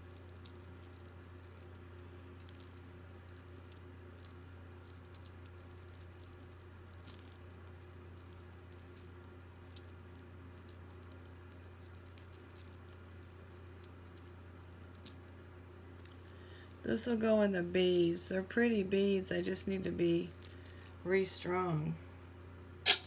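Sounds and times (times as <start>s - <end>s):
steady low hum: 14.8s - 23.0s.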